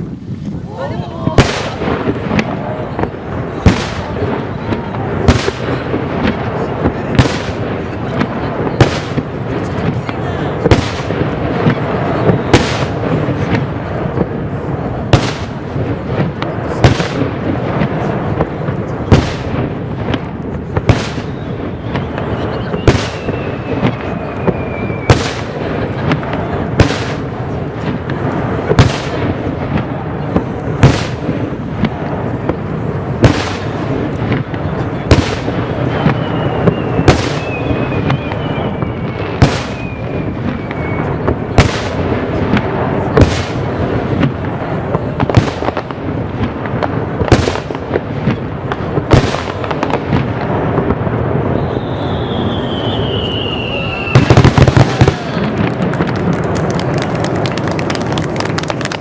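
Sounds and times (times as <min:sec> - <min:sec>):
fireworks bangs: 0:00.0 - 0:59.0
falling firework whistle: 0:20.9 - 0:26.2, 0:35.3 - 0:41.9, 0:51.3 - 0:57.2.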